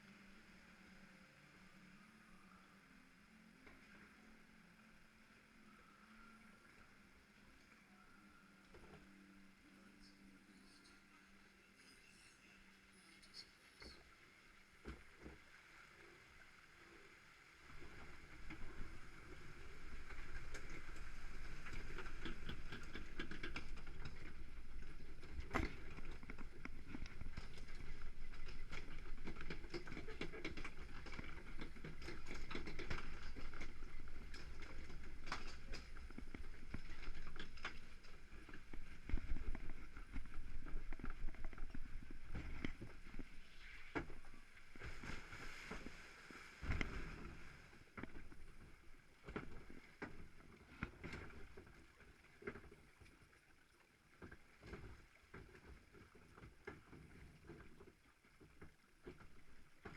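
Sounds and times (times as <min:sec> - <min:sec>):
boat rumbling along channel: 0:17.6 - 0:49.0.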